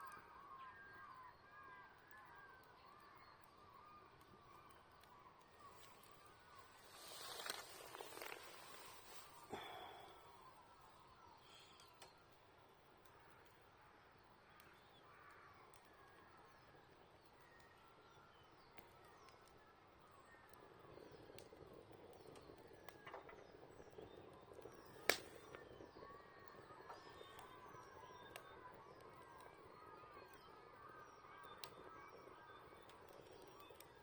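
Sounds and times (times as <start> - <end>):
campfire crackling: 0.0 - 34.0
birds singing: 14.4 - 34.0
sharp pop of fire: 24.6 - 26.0.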